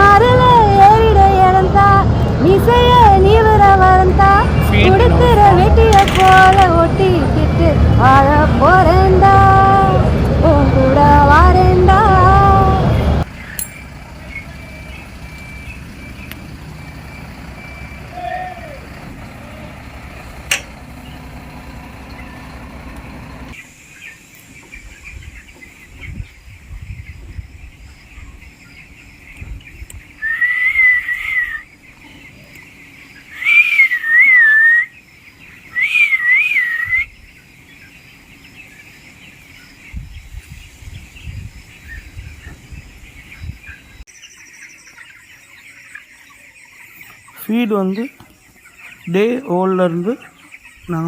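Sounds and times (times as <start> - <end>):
vehicle engine humming: 0.0 - 25.8
loud wavering whistled calls: 0.2 - 27.2, 30.0 - 51.0.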